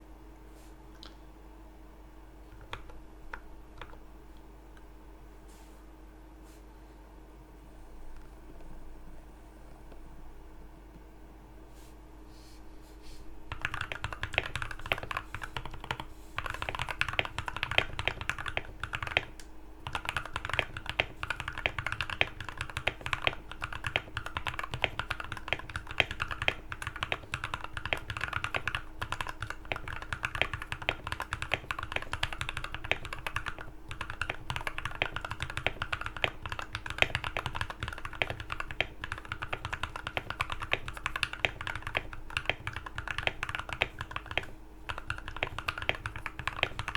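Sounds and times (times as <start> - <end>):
fast mechanical keyboard typing: 13.5 - 46.9.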